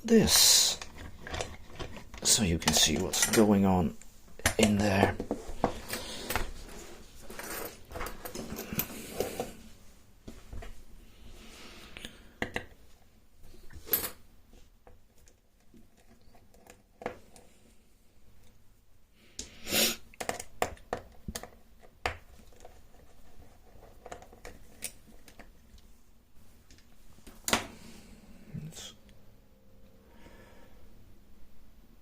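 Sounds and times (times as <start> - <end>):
metal tools clicking and knocking: 0.8 - 3.6.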